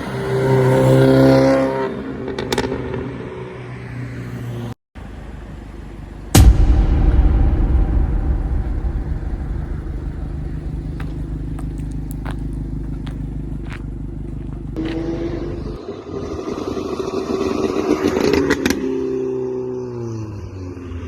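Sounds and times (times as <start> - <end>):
exhaust pops and crackles: 7.7 - 15.0
car engine revving: 8.1 - 20.7.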